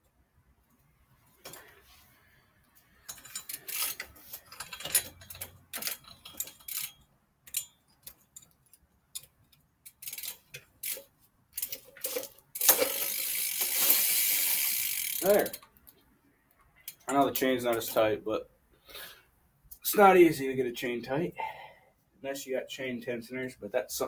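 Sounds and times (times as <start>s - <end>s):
bicycle chain clicks and rattles: 2.8s - 16.0s
bicycle wheel ratcheting whirr: 3.0s - 7.7s, 9.8s - 15.7s.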